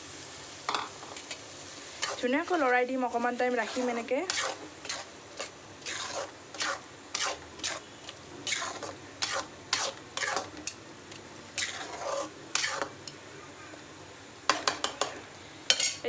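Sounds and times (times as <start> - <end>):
spatula scraping masala in pan: 1.1 - 13.0.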